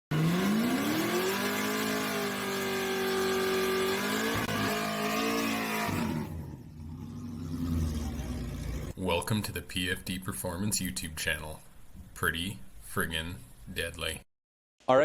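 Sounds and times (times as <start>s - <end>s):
race car engine accelerating: 0.1s - 9.0s.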